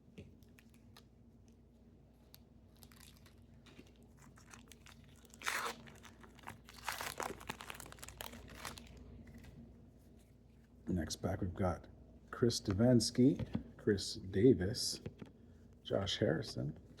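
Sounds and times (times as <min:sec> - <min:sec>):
wrapper tearing and crinkling: 0:02.7 - 0:09.0.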